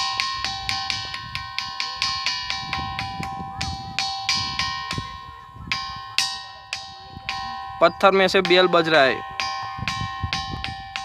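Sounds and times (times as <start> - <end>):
ringing stone struck with stone: 0.0 - 11.0.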